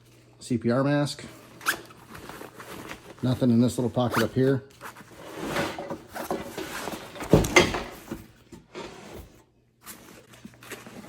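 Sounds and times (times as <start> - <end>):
backpack rustling: 1.4 - 5.3.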